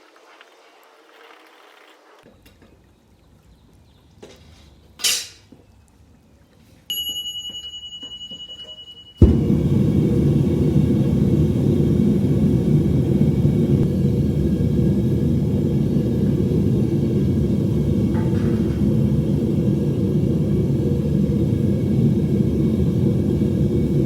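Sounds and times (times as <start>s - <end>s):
furnace burner rumbling: 9.2s - 24.0s.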